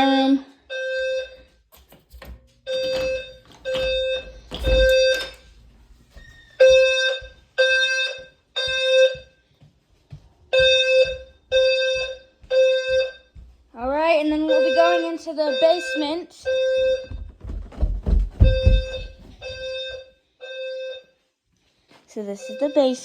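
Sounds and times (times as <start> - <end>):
fire alarm horn tones: 2.7 - 5.5, 6.5 - 9.2, 14.5 - 17.2, 22.4 - 23.0
low thumps: 17.1 - 19.6.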